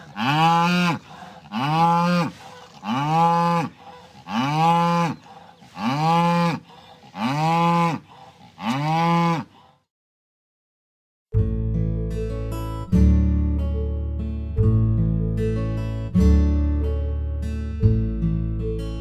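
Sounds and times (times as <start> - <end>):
cow mooing in distress: 0.0 - 9.6.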